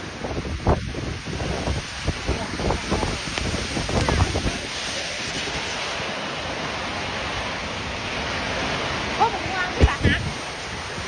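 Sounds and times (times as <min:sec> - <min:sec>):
storm rushing noise: 0:00.0 - 0:11.0
wind buffeting microphone: 0:00.0 - 0:11.0.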